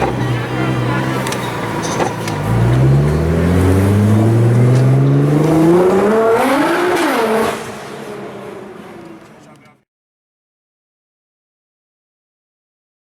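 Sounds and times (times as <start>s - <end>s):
car engine accelerating hard: 0.0s - 9.8s.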